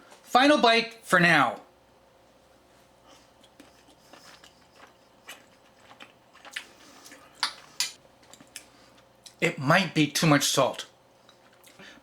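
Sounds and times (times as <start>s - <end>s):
person chewing soft food: 2.9s - 9.4s, 11.2s - 12.0s.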